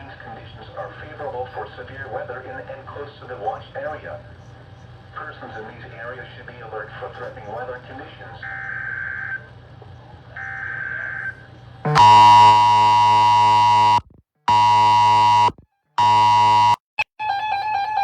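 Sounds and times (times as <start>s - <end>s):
buzzy electronic tone bursts: 11.9s - 16.8s
faint steady beep: 11.9s - 17.0s.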